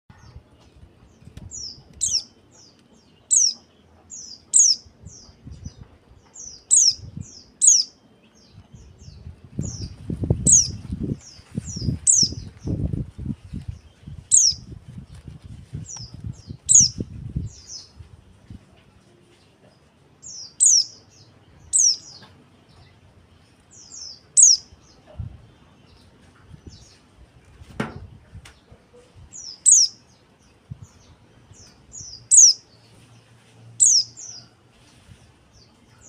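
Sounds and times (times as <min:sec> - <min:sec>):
low thumps and rustles: 0:09.2 - 0:19.0, 0:26.2 - 0:29.3.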